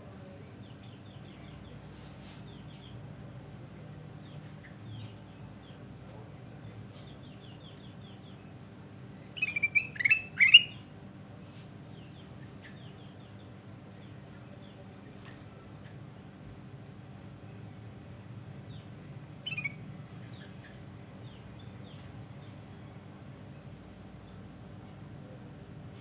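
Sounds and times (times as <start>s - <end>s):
faint rapid bird chirps: 4.0s - 10.9s, 18.6s - 23.0s.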